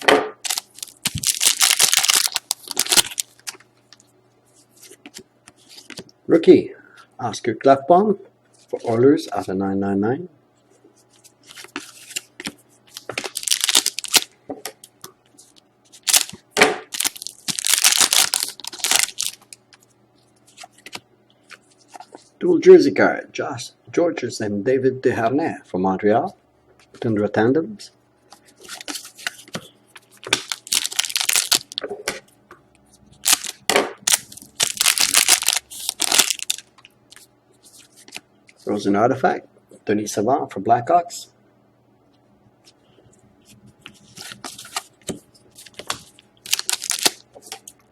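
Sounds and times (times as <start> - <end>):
plastic packaging crinkling: 0.4 - 3.7, 11.4 - 14.4, 15.4 - 19.9, 28.6 - 31.9, 33.2 - 38.2, 44.0 - 47.8.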